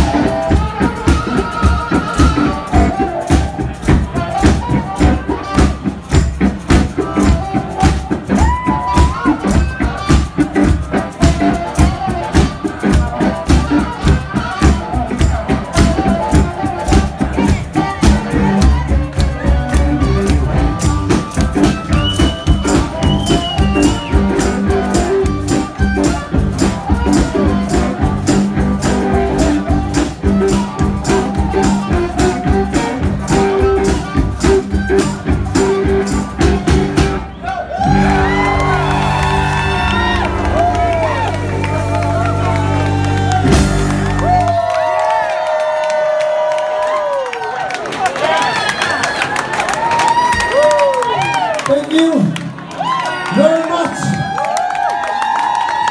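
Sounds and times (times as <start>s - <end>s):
steady drum beat: 0.0s - 44.8s
blues-rock band playing: 0.0s - 45.8s.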